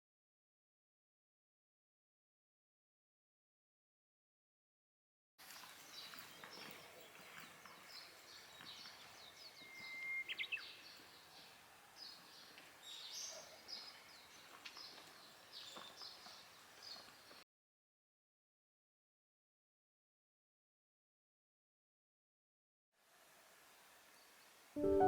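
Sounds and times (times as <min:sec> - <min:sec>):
songbirds chirping: 0:05.4 - 0:17.4.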